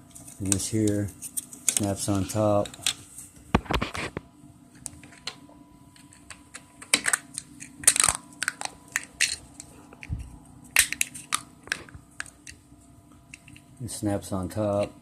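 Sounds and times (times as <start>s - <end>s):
plastic parts clicking and rattling: 6.0s - 10.2s.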